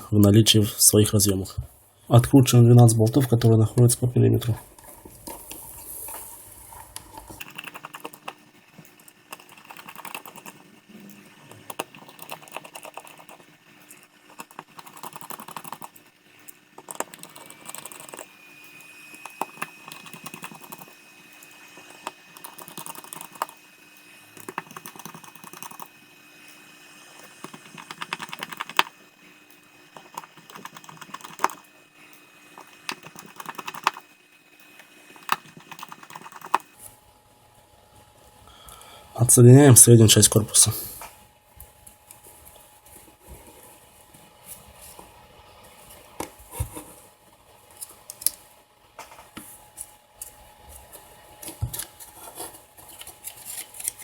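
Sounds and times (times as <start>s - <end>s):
screwdriver ticking and clicking: 19.2s - 20.9s, 21.9s - 23.6s, 24.4s - 25.9s, 27.4s - 28.9s, 32.6s - 34.0s.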